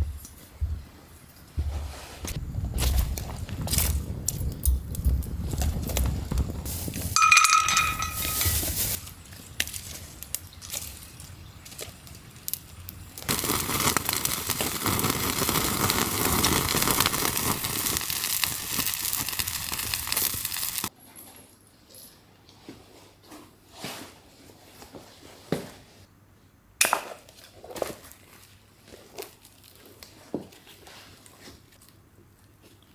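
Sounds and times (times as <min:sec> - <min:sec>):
steady rustling: 0:01.6 - 0:09.0
metal clink: 0:07.2 - 0:09.0.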